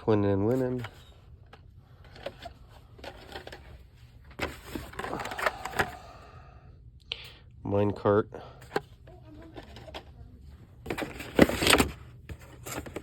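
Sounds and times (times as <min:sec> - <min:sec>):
plastic packaging clicking and crinkling: 0:00.8 - 0:06.1, 0:10.8 - 0:13.0.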